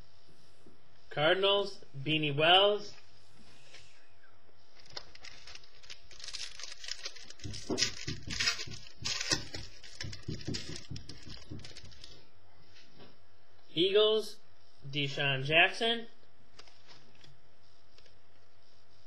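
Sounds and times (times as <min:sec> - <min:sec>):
cards rustling and clicking: 0:04.8 - 0:12.2, 0:16.6 - 0:17.3.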